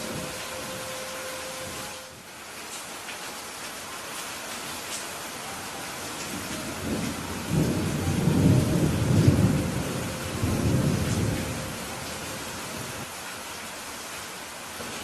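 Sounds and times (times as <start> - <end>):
steady rain falling: 0.0 - 15.0
rolling thunder rumble: 6.2 - 13.1.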